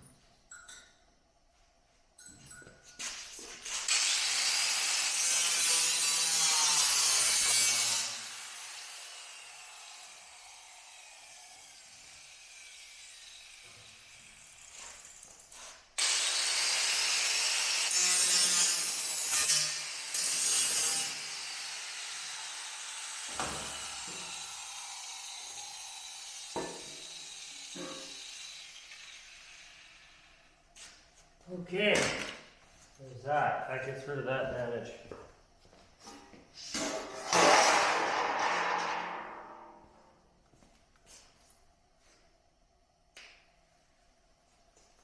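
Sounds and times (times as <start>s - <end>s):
power tool cutting steel: 3.6s - 30.5s.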